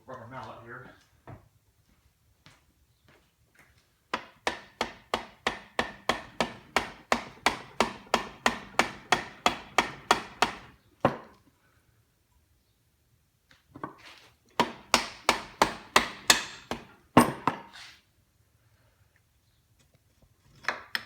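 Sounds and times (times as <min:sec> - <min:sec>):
rubber mallet tapping on metal: 0:04.1 - 0:10.7, 0:14.6 - 0:17.3.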